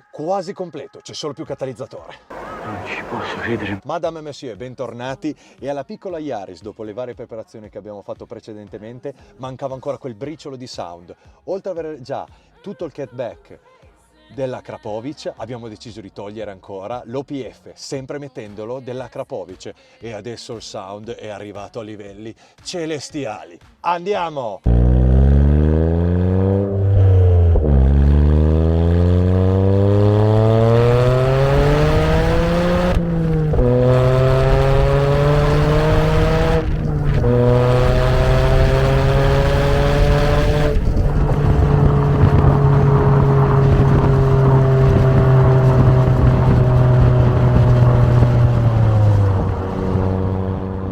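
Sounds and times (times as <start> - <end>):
car engine accelerating hard: 2.3 - 3.8, 24.7 - 50.9.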